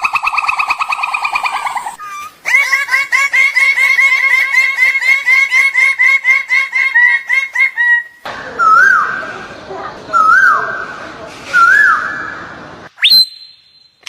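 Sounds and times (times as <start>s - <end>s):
bird calling repeated notes: 0.0s - 9.2s.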